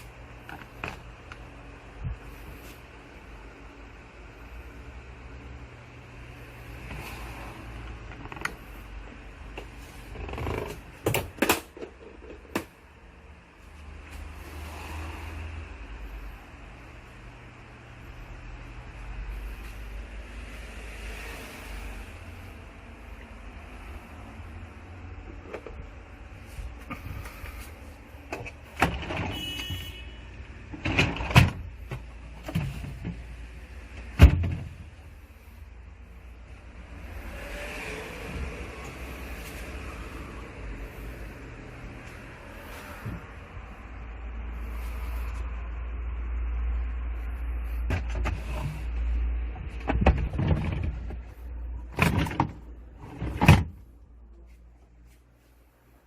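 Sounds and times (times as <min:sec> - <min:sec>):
refrigerator low hum: 0:00.0 - 0:56.0
refrigerator doors knocking and thudding: 0:34.0 - 0:34.8, 0:49.7 - 0:51.2
refrigerator doors thumping: 0:34.1 - 0:34.8.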